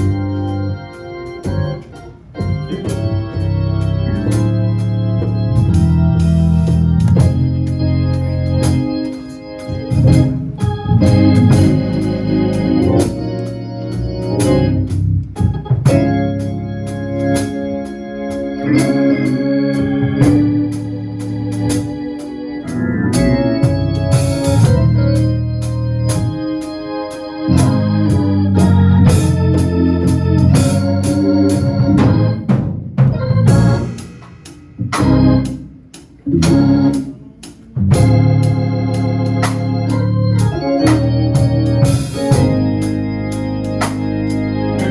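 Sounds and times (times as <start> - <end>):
organ playing chords: 0.0 - 44.9
sharp hits: 33.0 - 37.3.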